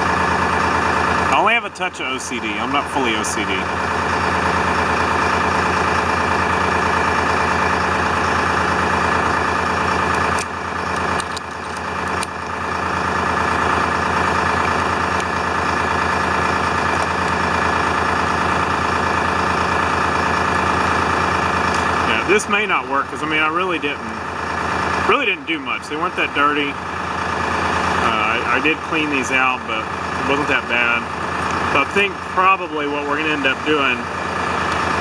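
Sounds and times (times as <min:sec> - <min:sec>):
diesel engine idling: 0:00.0 - 0:35.0
sharp clicks: 0:10.1 - 0:12.6.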